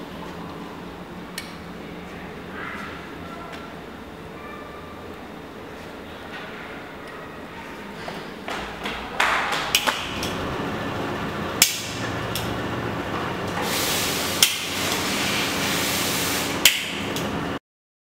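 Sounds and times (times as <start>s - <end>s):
steady hiss: 13.6s - 16.8s.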